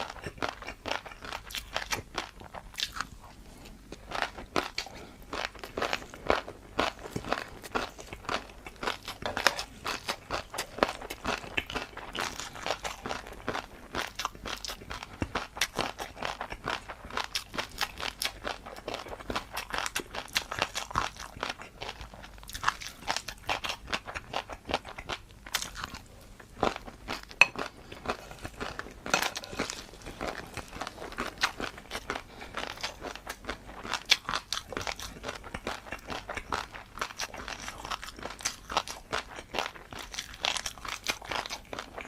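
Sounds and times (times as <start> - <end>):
crunchy food chewing: 0.0 - 42.0.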